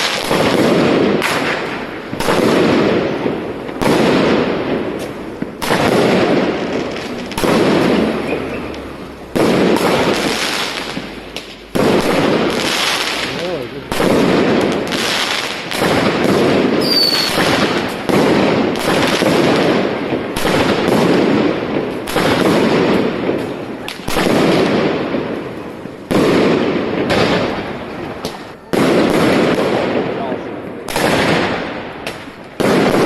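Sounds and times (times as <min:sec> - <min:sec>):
fireworks bursting with echoing rumble: 0:00.0 - 0:33.0
high whistle: 0:16.8 - 0:17.4.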